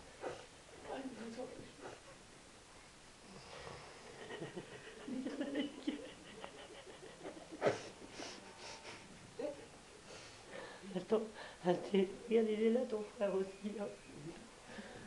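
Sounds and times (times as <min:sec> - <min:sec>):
wheezy snore-like breathing: 0:03.3 - 0:04.2.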